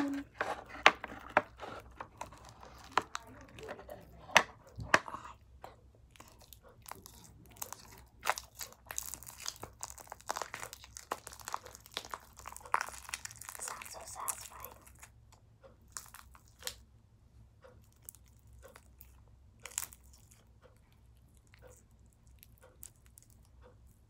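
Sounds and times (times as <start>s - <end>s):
slime crackling and popping: 6.2s - 15.1s, 19.6s - 20.4s.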